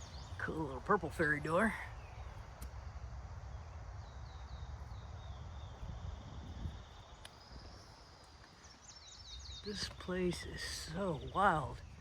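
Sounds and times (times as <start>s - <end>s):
songbird singing: 0.0s - 12.0s
faint clicks: 2.5s - 2.8s.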